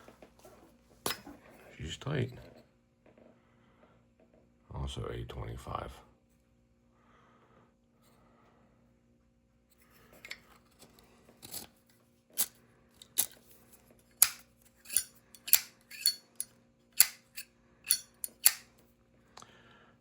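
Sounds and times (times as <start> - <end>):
lighter lid clacking: 14.2 - 18.7.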